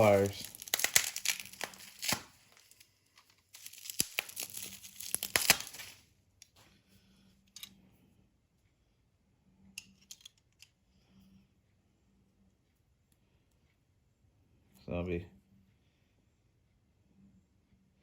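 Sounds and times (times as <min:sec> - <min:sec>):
packaging crinkling and tearing: 0:00.0 - 0:06.1.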